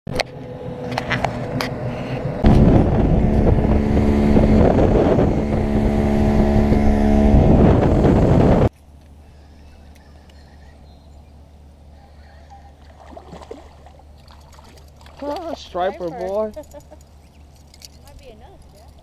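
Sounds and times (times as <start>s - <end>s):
boat motor running: 0.1s - 8.7s
wind buffeting microphone: 1.3s - 8.7s.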